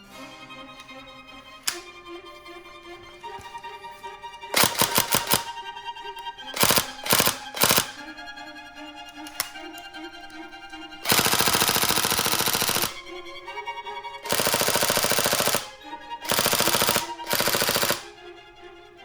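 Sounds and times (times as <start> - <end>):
background music: 0.0 - 19.0
airsoft gun firing full auto: 4.5 - 5.6, 6.5 - 8.0, 11.0 - 13.1, 14.2 - 18.1.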